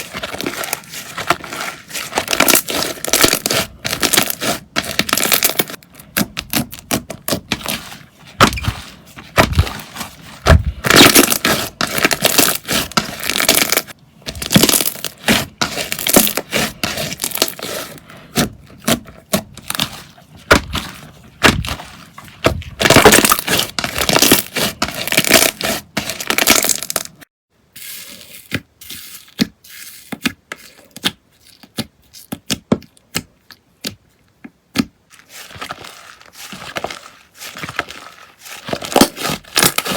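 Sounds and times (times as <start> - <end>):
slime crackling and popping: 10.5 - 17.6, 22.4 - 27.2.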